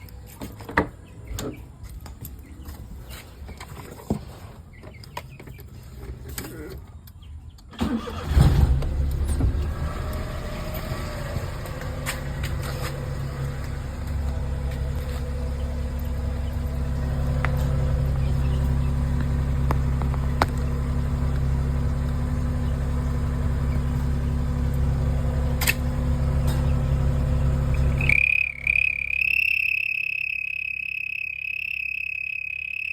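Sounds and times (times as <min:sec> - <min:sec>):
car engine idling: 0:07.8 - 0:32.9.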